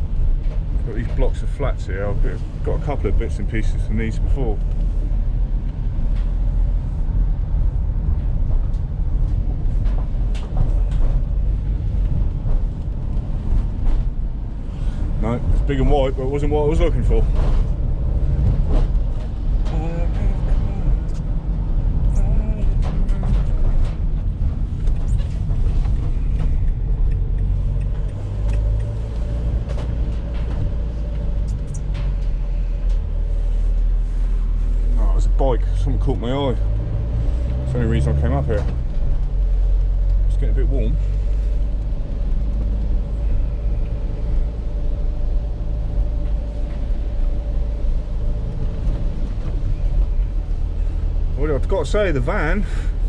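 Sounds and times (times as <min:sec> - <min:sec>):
light rattles and knocks: 0:00.0 - 0:35.4
van engine and road rumble: 0:00.0 - 0:53.0.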